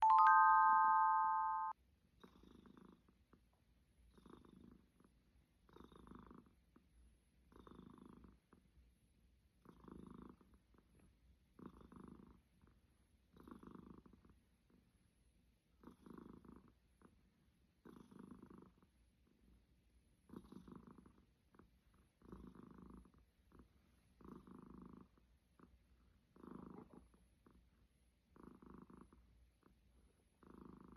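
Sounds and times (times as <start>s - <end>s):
chime of held tones: 0.0s - 1.8s
cat snoring: 2.2s - 3.2s, 4.1s - 6.6s, 7.5s - 8.6s, 9.6s - 10.6s, 11.5s - 12.4s, 13.3s - 14.3s, 15.8s - 16.7s, 17.8s - 18.9s, 20.2s - 21.3s, 21.9s - 23.6s, 24.2s - 25.7s, 26.3s - 27.6s, 28.3s - 29.7s, 30.4s - 30.9s.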